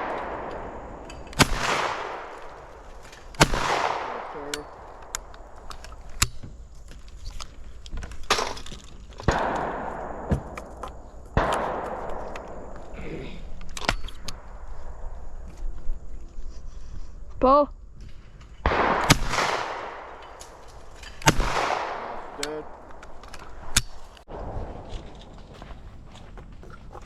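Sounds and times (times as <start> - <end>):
shotgun shots with echo: 0.0 - 2.8, 3.4 - 4.9, 9.3 - 10.7, 11.3 - 12.9, 18.6 - 20.4, 21.2 - 23.0
gun clicks: 0.1 - 12.7, 19.0 - 24.2.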